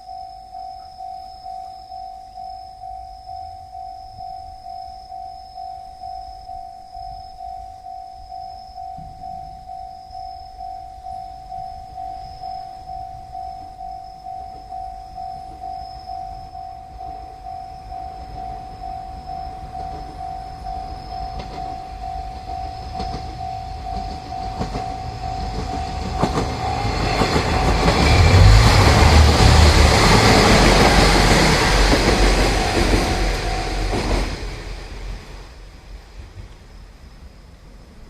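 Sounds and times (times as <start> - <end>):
train engine rumble: 18.1 - 38.0.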